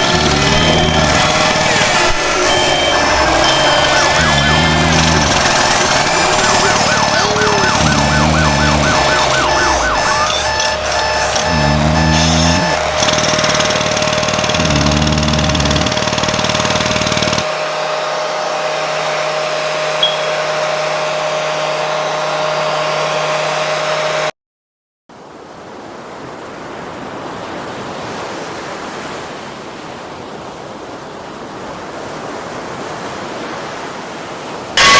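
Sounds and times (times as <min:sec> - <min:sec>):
low warbling sound: 0:00.0 - 0:12.8
held tone: 0:00.0 - 0:16.0, 0:20.0 - 0:20.7.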